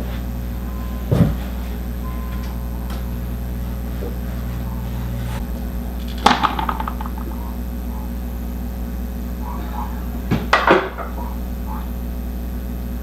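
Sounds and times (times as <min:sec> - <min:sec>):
low hum: 0:00.0 - 0:10.3
sharp clack: 0:06.2 - 0:07.3.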